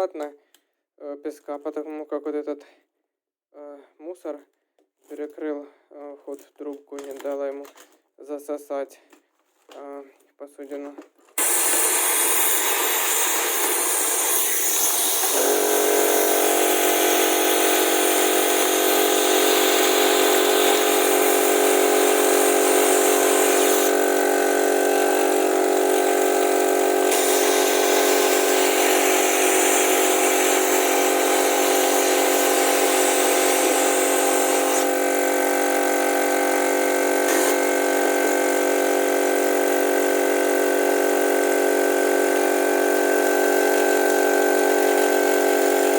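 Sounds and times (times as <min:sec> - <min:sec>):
air rushing through vacuum gun: 0:11.4 - 0:41.0.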